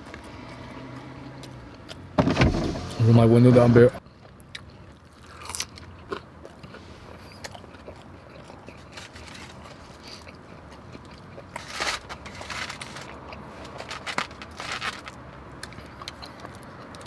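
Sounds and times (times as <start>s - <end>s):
person biting and chewing: 4.5s - 17.0s.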